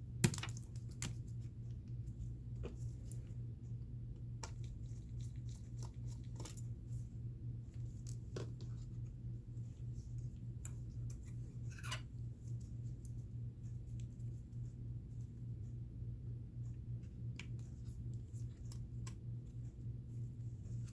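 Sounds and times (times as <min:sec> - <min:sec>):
steady low hum: 0:00.0 - 0:20.9.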